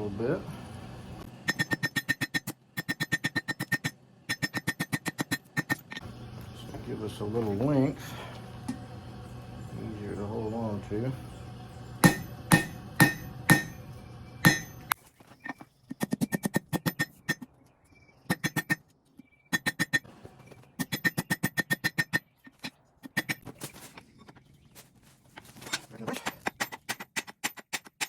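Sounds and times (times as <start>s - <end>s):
hammer striking steel on anvil: 1.4s - 6.0s, 12.0s - 13.8s, 14.4s - 15.0s.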